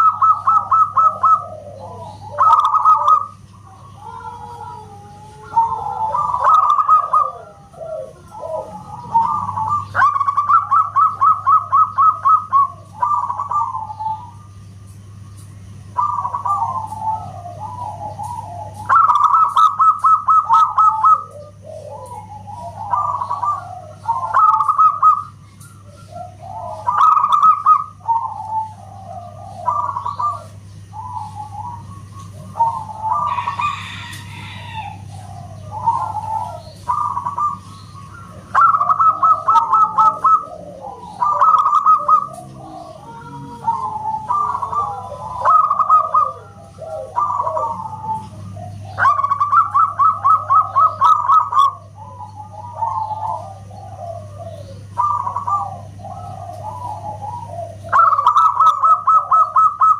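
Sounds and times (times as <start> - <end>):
doves cooing: 0.0 - 59.9
steady low hum: 0.0 - 59.9.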